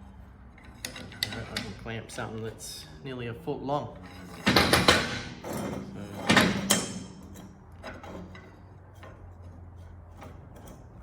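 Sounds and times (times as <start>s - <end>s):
metal clamp clattering: 0.6s - 1.8s.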